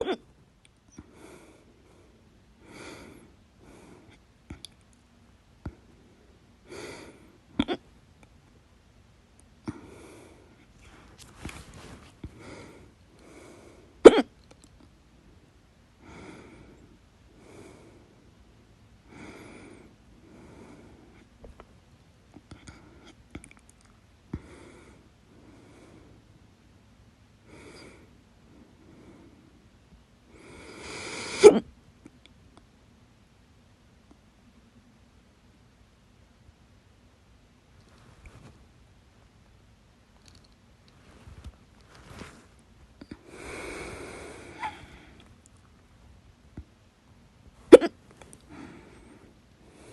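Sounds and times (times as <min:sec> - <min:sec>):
person hiccuping: 0:00.0 - 0:00.3, 0:07.6 - 0:07.8, 0:14.0 - 0:14.3, 0:47.7 - 0:48.0
woman breathing quietly: 0:00.8 - 0:04.7, 0:05.6 - 0:07.5, 0:09.6 - 0:14.0, 0:15.3 - 0:21.6, 0:22.3 - 0:23.3, 0:24.3 - 0:26.5, 0:27.4 - 0:31.4, 0:40.2 - 0:45.5, 0:48.2 - 0:49.9.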